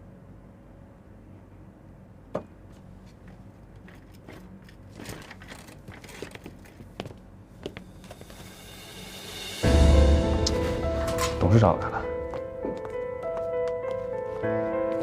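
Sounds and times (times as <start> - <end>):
low hum: 7.3 - 14.9.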